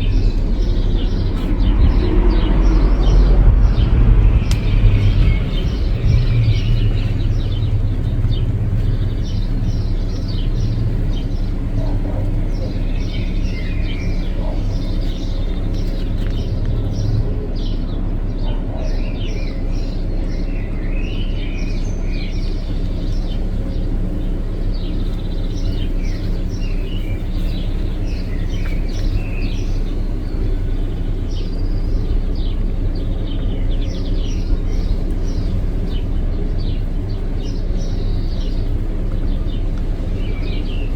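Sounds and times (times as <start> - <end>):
low rumble: 0.0 - 20.8
small birds chirping: 0.0 - 40.9.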